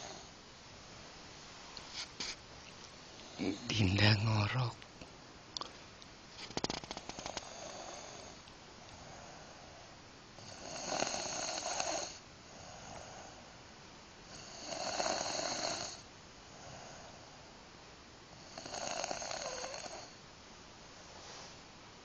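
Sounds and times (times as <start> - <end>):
soft breaths: 1.5 - 4.9, 5.6 - 13.6, 14.3 - 17.6, 20.9 - 21.8
woman snoring: 7.1 - 8.4, 10.4 - 13.3, 14.3 - 16.0, 18.4 - 20.2.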